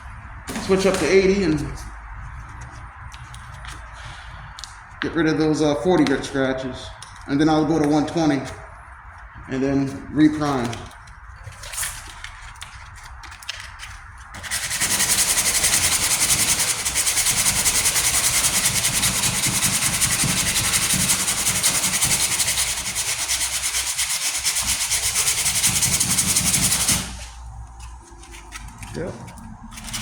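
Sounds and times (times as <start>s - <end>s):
sandpaper rasping over steel: 14.4s - 28.8s.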